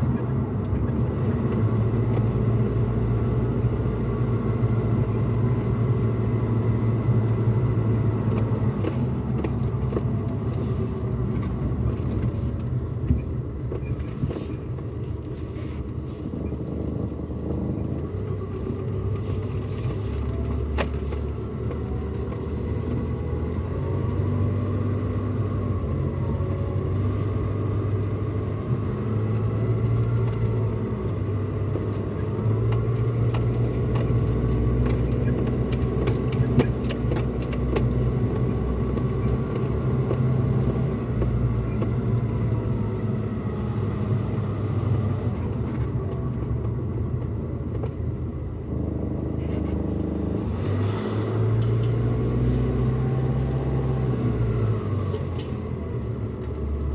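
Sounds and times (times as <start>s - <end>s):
engine and road rumble: 0.0s - 56.9s
light clicks and rattles: 29.8s - 40.3s.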